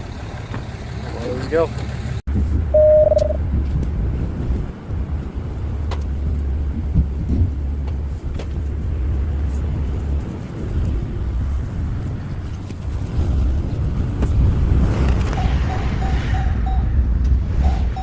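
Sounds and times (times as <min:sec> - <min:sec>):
road noise: 0:00.0 - 0:18.0
truck engine rumble: 0:00.0 - 0:18.0.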